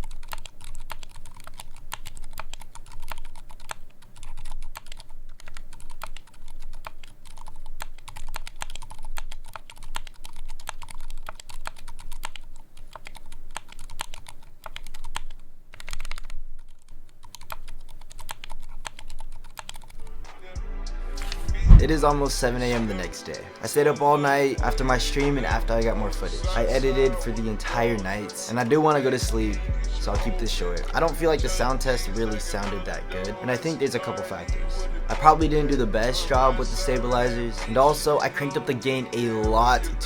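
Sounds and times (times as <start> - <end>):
soft keyboard keystroke clacks: 0.0 - 20.1
low hum: 20.0 - 23.1.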